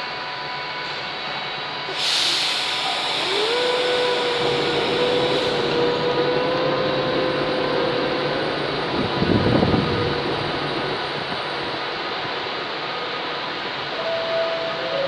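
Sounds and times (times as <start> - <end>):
train motor whine: 0.0 - 15.0
hiss of air: 1.9 - 6.2.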